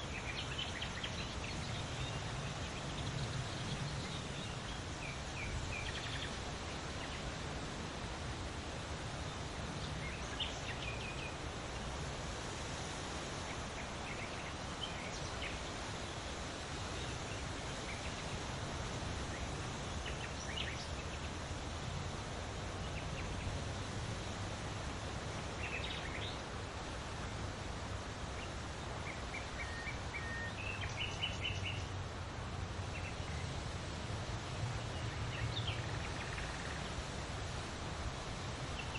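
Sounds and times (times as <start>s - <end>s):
leaves rustling in wind: 0.0s - 38.9s.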